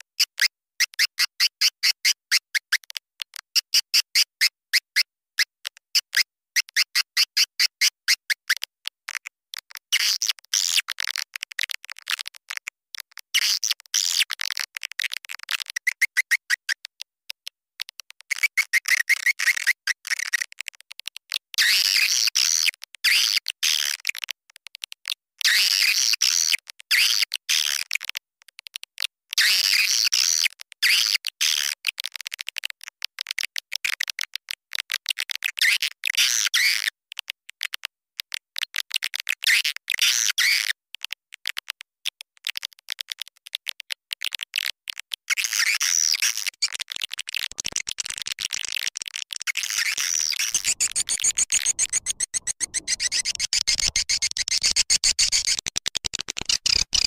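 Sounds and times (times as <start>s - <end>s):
swiftlets twittering: 50.4s - 57.0s.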